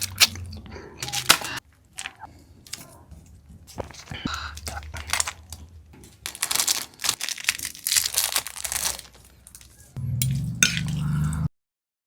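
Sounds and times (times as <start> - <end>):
chewing crunchy food: 0.0 - 11.5
low steady hum: 8.6 - 11.5.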